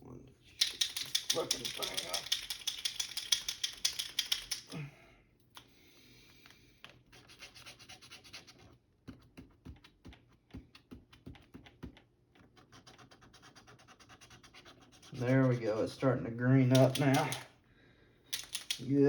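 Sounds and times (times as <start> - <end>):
paint pen rattling when shaken: 0.5 - 4.7, 16.7 - 17.5, 18.3 - 19.0.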